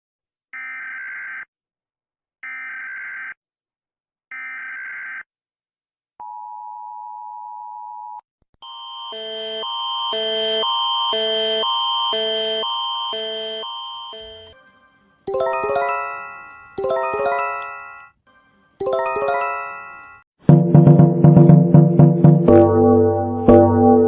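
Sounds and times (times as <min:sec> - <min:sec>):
alternating tone alarm: 0:08.6 - 0:20.2
steady alert tone: 0:14.2 - 0:18.0, 0:18.8 - 0:20.2.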